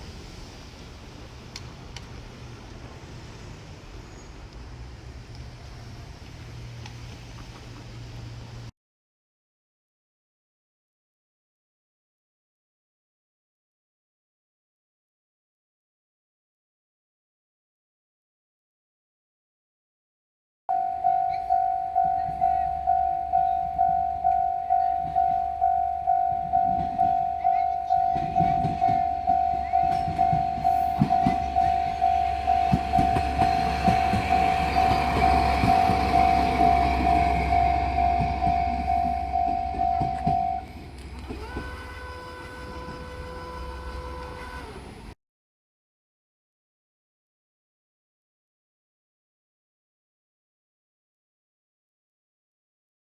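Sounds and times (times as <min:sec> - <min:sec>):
level crossing bell ringing: 0:20.7 - 0:40.8
low engine rumble: 0:20.7 - 0:45.2
train horn: 0:21.0 - 0:45.0.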